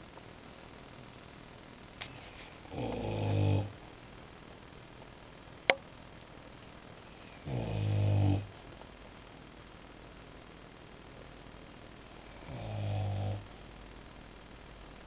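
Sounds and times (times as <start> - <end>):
dog snoring: 2.6 - 3.8, 7.1 - 8.6, 12.3 - 13.5.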